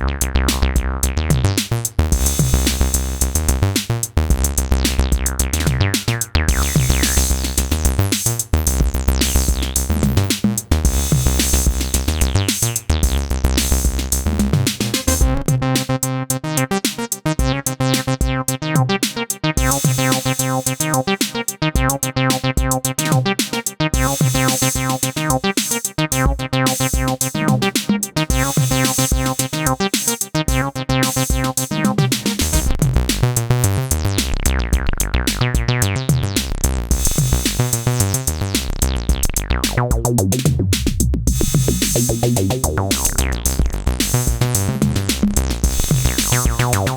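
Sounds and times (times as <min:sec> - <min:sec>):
acid bass sequence: 0:00.0 - 0:46.9
drum machine beat: 0:00.0 - 0:46.9.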